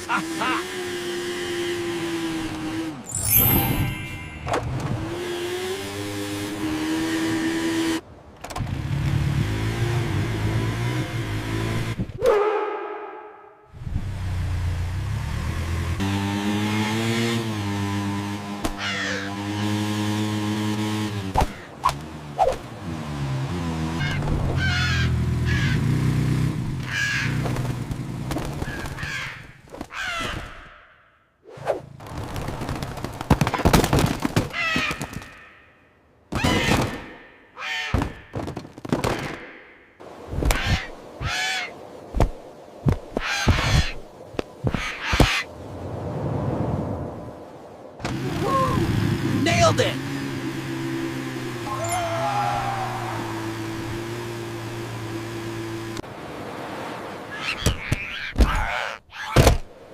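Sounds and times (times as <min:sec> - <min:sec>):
motor scooter engine humming: 0:00.0 - 0:08.0, 0:13.8 - 0:28.9, 0:48.0 - 0:56.0
seagulls squawking: 0:18.8 - 0:19.3, 0:23.9 - 0:25.8, 0:26.8 - 0:27.4, 0:28.6 - 0:30.8, 0:34.5 - 0:35.6, 0:36.3 - 0:38.4, 0:40.5 - 0:41.8, 0:43.2 - 0:44.0, 0:44.6 - 0:45.5, 0:57.3 - 0:59.4
motor scooter engine: 0:48.1 - 0:56.0.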